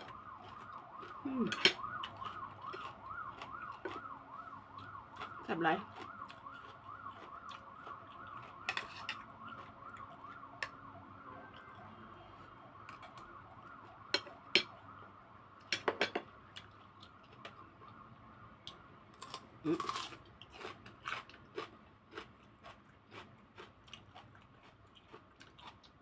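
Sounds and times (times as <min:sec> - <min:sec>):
distant siren warbling: 0:00.0 - 0:15.6, 0:16.3 - 0:19.1
cutlery clinking on plate: 0:15.7 - 0:16.2.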